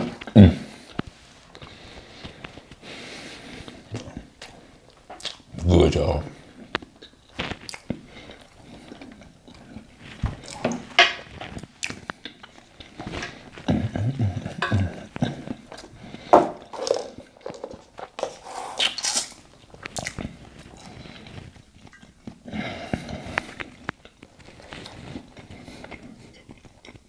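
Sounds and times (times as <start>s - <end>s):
chewing and mouth smacks: 3.7s - 5.6s, 6.6s - 10.8s, 11.5s - 27.0s
cutlery clinking on a plate: 10.6s - 11.3s, 14.6s - 15.0s.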